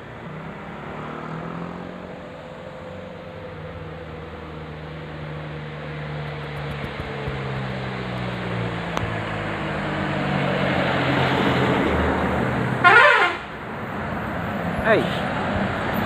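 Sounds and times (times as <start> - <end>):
bus engine and tyre noise: 0.0 - 16.0
loud horn blast: 12.8 - 13.6.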